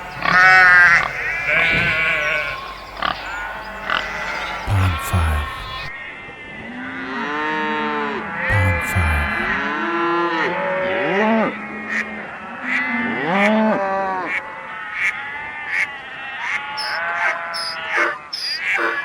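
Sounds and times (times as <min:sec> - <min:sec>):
cows mooing: 0:16.4 - 0:19.0.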